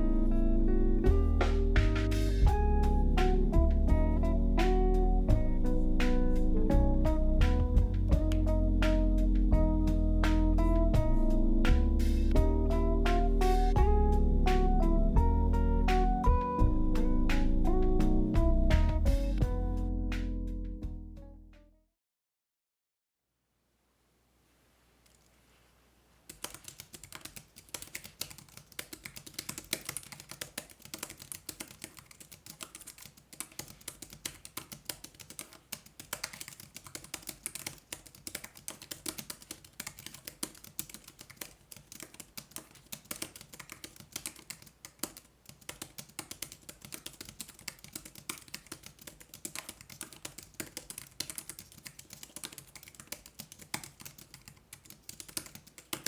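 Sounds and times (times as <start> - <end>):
fast typing on keyboard: 26.3 - 56.0.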